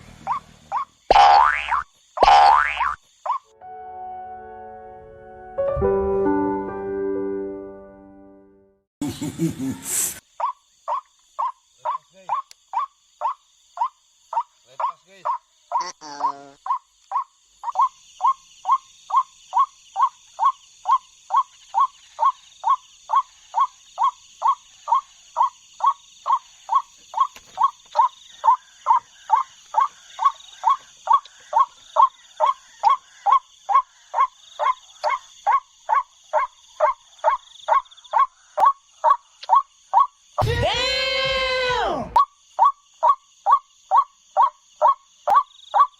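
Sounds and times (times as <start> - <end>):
bird harsh repeated call: 0.2 - 3.5, 9.8 - 45.9.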